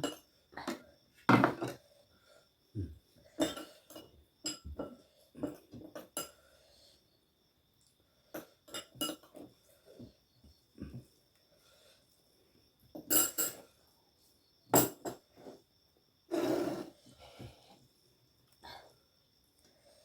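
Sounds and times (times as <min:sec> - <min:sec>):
spoons clinking on plates: 0:03.4 - 0:06.4, 0:08.4 - 0:09.5, 0:13.0 - 0:13.6, 0:14.8 - 0:15.2.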